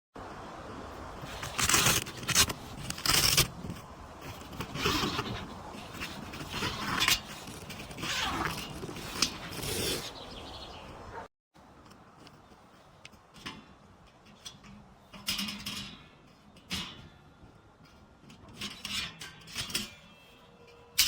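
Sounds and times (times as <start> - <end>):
scraping and rustling: 1.1 - 21.0.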